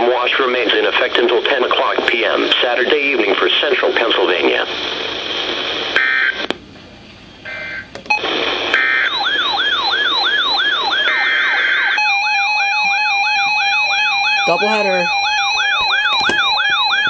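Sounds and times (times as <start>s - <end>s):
siren-like alarm wail: 8.8s - 17.0s
steady alert tone: 12.0s - 16.2s
buzzy digital alert bursts: 14.4s - 15.3s.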